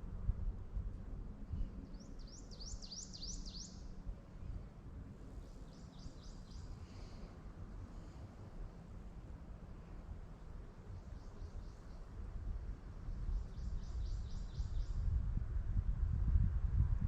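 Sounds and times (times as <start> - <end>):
steady low rumble: 0.0 - 17.0
songbird singing: 1.6 - 4.0, 5.2 - 7.4, 9.8 - 15.2.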